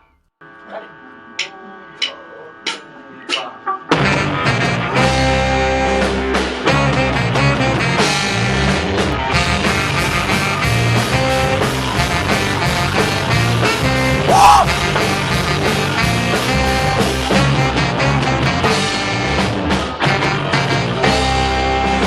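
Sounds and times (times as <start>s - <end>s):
instrumental band music: 2.7s - 22.0s.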